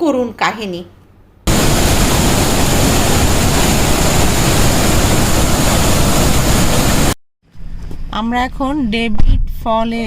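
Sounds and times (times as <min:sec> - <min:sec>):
waterfall roaring: 0:01.5 - 0:07.2.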